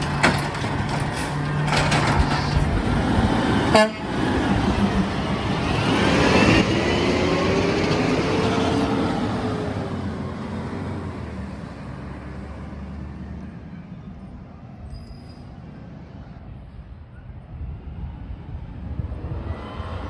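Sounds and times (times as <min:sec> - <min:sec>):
truck driving away: 0:00.0 - 0:14.1.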